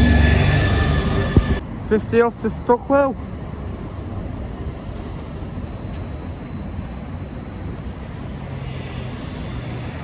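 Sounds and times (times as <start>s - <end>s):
bus engine rumble: 0.0s - 1.9s
faint high whine: 0.0s - 10.0s
street traffic: 0.0s - 10.0s.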